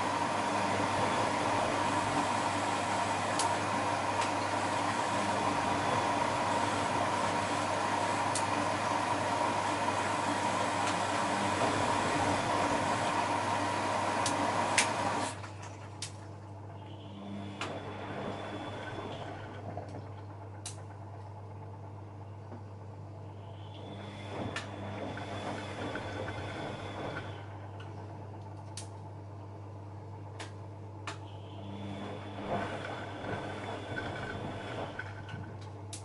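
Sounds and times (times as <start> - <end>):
steady hum: 0.0 - 36.0
washing machine drum motor whining: 0.0 - 36.0
wet laundry sloshing: 15.2 - 16.4, 32.2 - 35.8.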